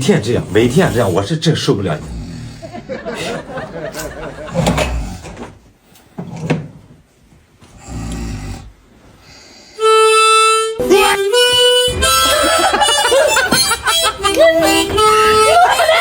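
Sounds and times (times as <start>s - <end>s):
harmonica held notes: 9.8s - 16.0s.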